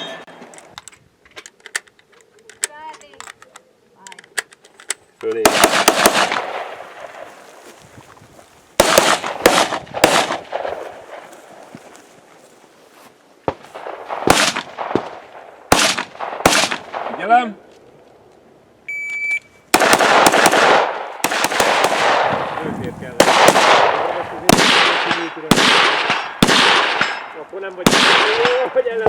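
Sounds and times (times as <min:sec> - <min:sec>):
rapid rifle fire: 0:05.4 - 0:07.2, 0:08.8 - 0:11.2, 0:13.8 - 0:17.2, 0:19.7 - 0:22.6, 0:23.2 - 0:27.2, 0:27.8 - 0:28.8
rifle shots with echo: 0:05.4 - 0:07.4, 0:08.8 - 0:11.4, 0:13.5 - 0:17.5, 0:19.7 - 0:29.0
shot timer beep: 0:18.9 - 0:19.6.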